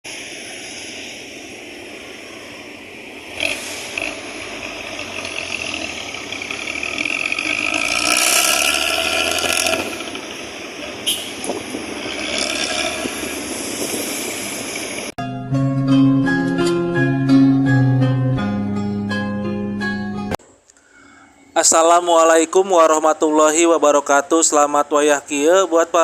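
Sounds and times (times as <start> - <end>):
bus engine snoring exhaust: 1.4 - 15.2.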